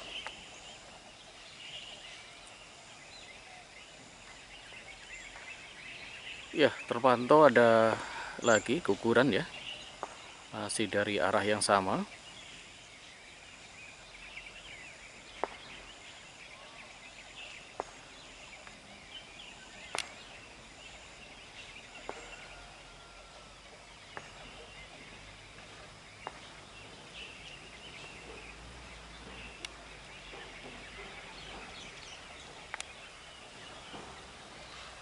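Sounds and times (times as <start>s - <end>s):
bird calls: 0.0s - 35.0s
insects trilling: 0.0s - 35.0s
sharp clicks: 19.9s - 20.2s, 32.7s - 33.0s.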